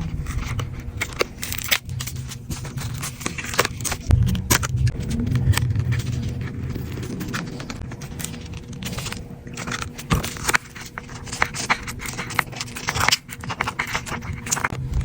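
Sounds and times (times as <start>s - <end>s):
hand tools clicking and scraping: 0.0s - 14.8s.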